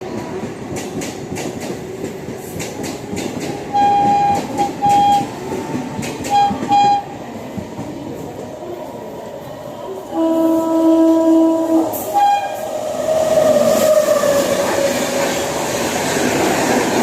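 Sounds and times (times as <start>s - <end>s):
train wheels clattering over rail joints: 0.7s - 8.0s
locomotive horn blasts: 3.7s - 5.3s, 6.3s - 7.1s, 10.2s - 12.6s.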